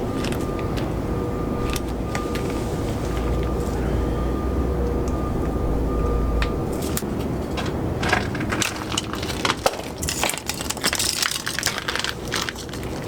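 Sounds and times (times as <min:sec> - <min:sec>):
crunching and crackling: 0:00.0 - 0:00.9, 0:06.7 - 0:13.0
vehicle low hum: 0:00.0 - 0:10.7.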